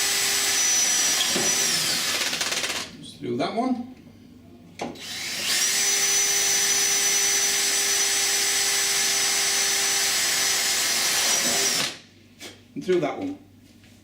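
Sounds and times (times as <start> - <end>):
power drill whining: 0.0 - 2.8, 5.0 - 12.0.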